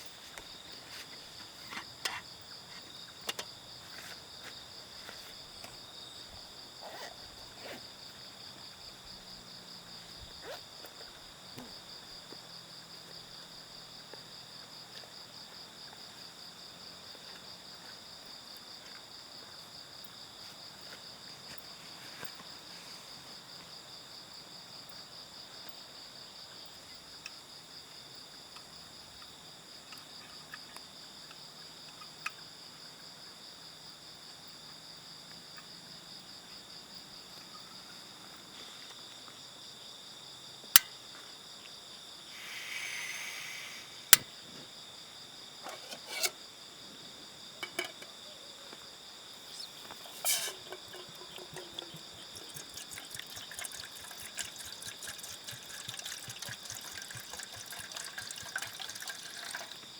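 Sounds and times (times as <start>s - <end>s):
crickets trilling: 0.0s - 59.9s
short hiss: 42.3s - 44.2s.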